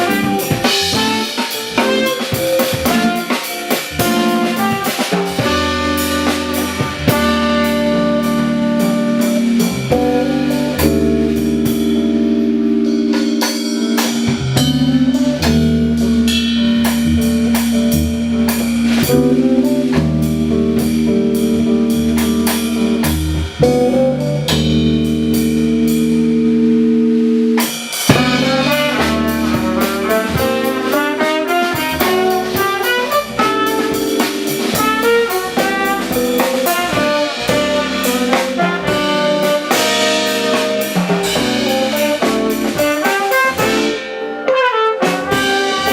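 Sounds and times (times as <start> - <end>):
trumpet: 0.0 - 12.0, 28.1 - 45.9
drum kit: 0.0 - 45.9
keyboard chords and bass line: 0.0 - 45.9.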